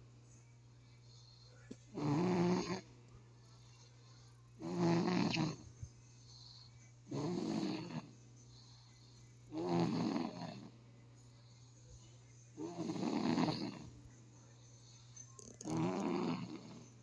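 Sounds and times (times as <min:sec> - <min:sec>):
slow regular snoring: 0:01.9 - 0:02.8, 0:04.6 - 0:05.6, 0:06.3 - 0:08.1, 0:09.5 - 0:10.7, 0:12.6 - 0:13.9, 0:15.6 - 0:17.0.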